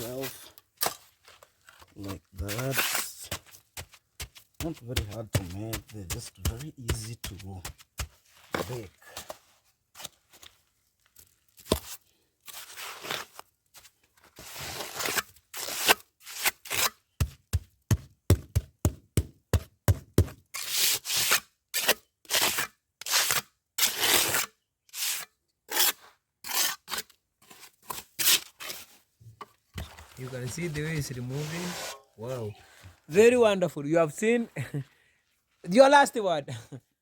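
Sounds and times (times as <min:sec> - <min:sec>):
shovel scraping sand-cement mix: 0:00.0 - 0:09.2, 0:11.6 - 0:17.4, 0:20.6 - 0:29.1, 0:29.8 - 0:33.4
short scraping strokes: 0:30.6 - 0:32.4.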